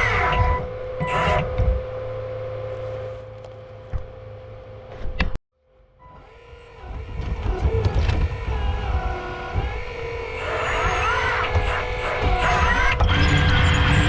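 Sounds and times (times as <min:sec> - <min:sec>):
toy excavator motors whining: 0:06.0 - 0:14.0.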